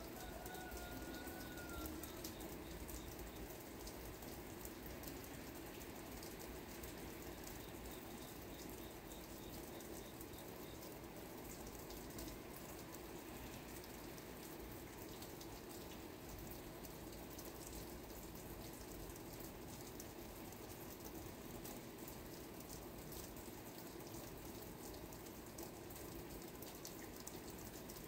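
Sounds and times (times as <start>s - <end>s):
quiet rain with drops ticking: 0.0s - 28.0s.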